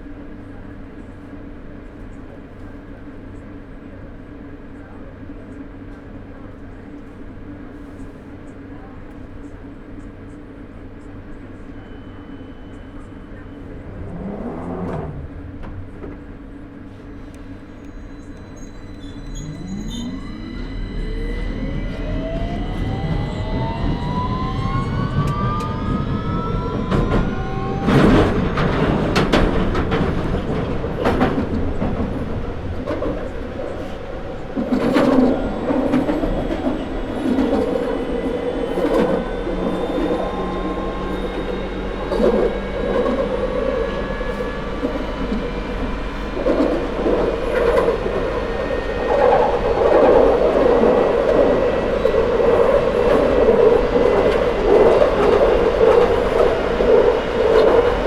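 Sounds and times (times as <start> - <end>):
rumble and hiss of wheels on rail: 0.0 - 58.0
traction motors whining: 11.7 - 16.5, 17.2 - 58.0.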